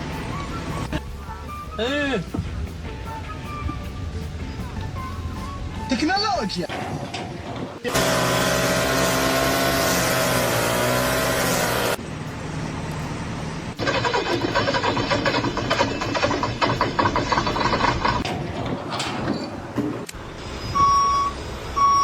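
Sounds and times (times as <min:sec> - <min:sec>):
engine noise: 0:07.9 - 0:18.8.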